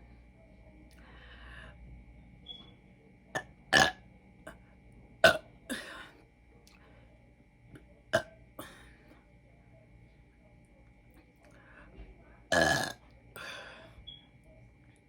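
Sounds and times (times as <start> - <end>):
woman burping: 3.7 - 4.0, 5.2 - 6.1, 12.5 - 13.6.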